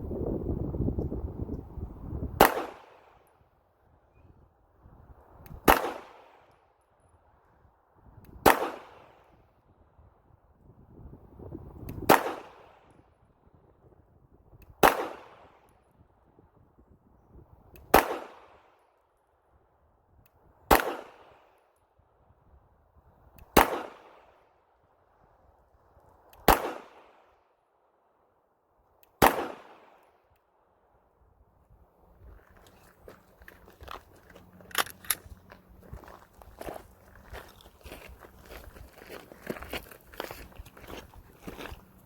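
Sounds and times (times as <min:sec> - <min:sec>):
pistol shots: 0:02.4 - 0:03.2, 0:05.6 - 0:06.4, 0:08.4 - 0:09.2, 0:12.1 - 0:12.7, 0:14.8 - 0:15.5, 0:17.9 - 0:18.5, 0:20.7 - 0:21.3, 0:23.6 - 0:24.2, 0:26.4 - 0:27.2, 0:29.2 - 0:30.0.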